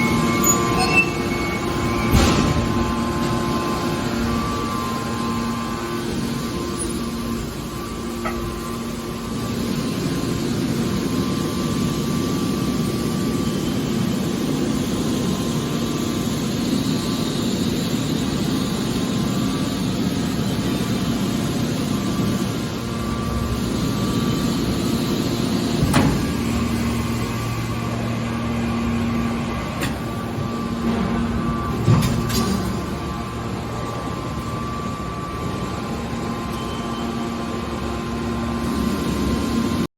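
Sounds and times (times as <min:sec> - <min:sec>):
metal press baler humming: 0:00.0 - 0:11.7, 0:21.7 - 0:39.6.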